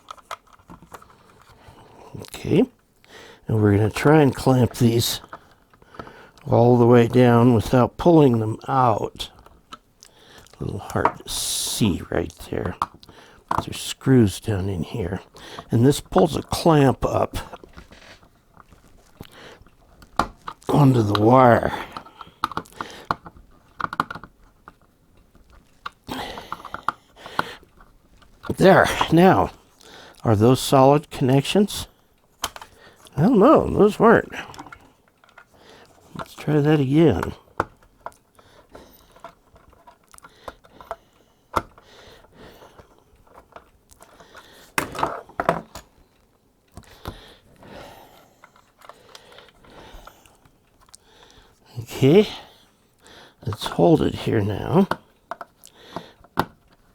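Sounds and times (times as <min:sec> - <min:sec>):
screwdriver clicks and metallic rattles: 0:00.0 - 0:01.4, 0:32.4 - 0:32.8.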